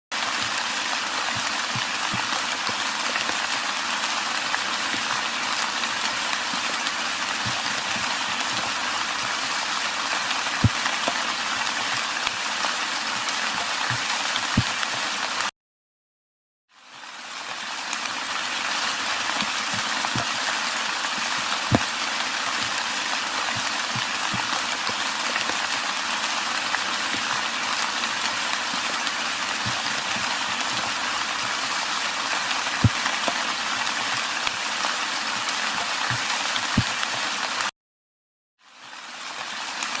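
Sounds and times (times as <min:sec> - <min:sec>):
raindrops tapping: 0:00.2 - 0:15.1, 0:18.9 - 0:34.7
steady rain hiss: 0:00.2 - 0:15.5, 0:16.8 - 0:37.7, 0:38.7 - 0:40.0.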